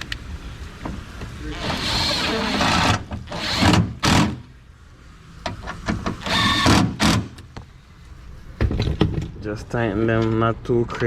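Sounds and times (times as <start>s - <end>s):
power screwdriver bursts: 1.6s - 4.5s, 6.1s - 7.4s.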